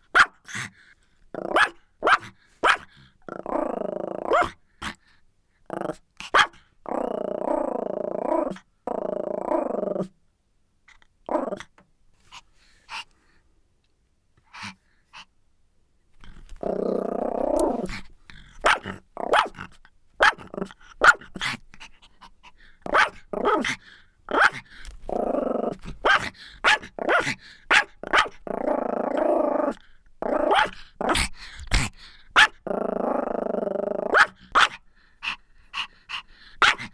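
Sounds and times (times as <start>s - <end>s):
dog barking: 0.1s - 0.4s, 1.5s - 2.9s, 4.3s - 4.5s, 6.3s - 6.6s, 18.6s - 19.6s, 20.2s - 21.3s, 22.9s - 23.7s, 26.0s - 28.4s, 32.4s - 32.6s, 34.1s - 34.8s
dog growling: 3.0s - 5.0s, 6.9s - 10.1s, 16.2s - 36.9s.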